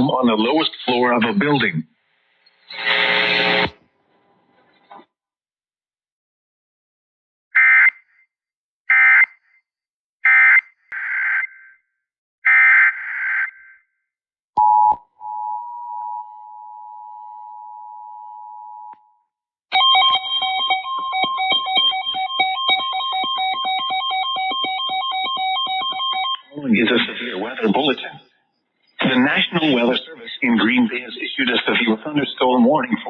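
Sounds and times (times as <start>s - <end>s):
two-tone attention signal: 19.8s - 26.6s.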